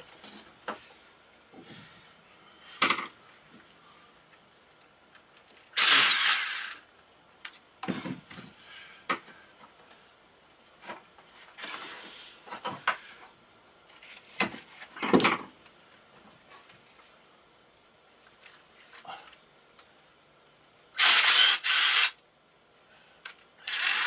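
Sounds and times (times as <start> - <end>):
tool rasp: 5.8 - 6.8.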